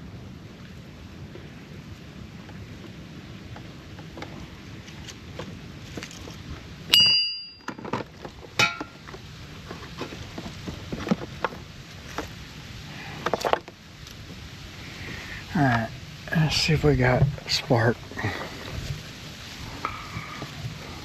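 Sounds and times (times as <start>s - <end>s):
loud ringing clang: 6.9s - 7.8s
metal tools clinking: 6.9s - 7.9s, 8.6s - 9.0s.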